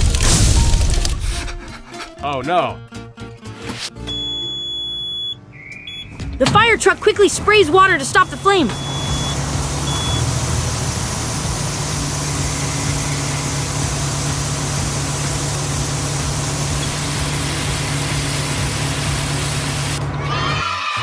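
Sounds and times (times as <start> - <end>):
motor hum: 4.1 - 20.3
water spraying hiss: 9.3 - 20.0.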